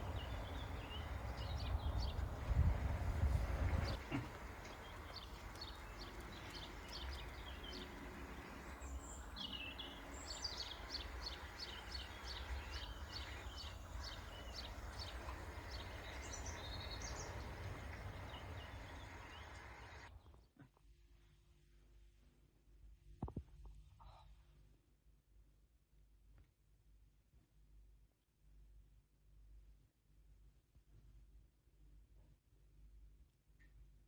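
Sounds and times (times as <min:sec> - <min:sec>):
low outdoor rumble: 0:00.0 - 0:20.1
songbird chirping: 0:00.0 - 0:20.1.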